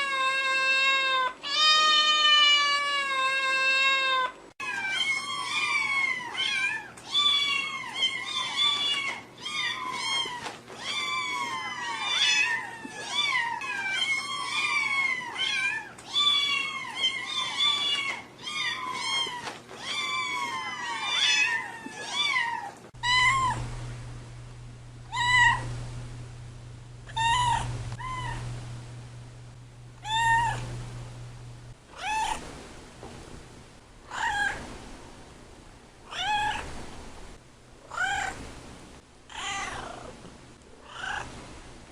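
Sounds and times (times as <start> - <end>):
cats meowing: 0.0 - 23.6, 25.1 - 25.7, 27.1 - 28.5, 30.0 - 30.8, 31.9 - 32.4, 34.1 - 34.7, 36.1 - 36.7, 37.9 - 38.4, 39.3 - 40.2, 40.8 - 41.3
low steady hum: 22.9 - 41.9
single cat meowing: 30.0 - 30.7.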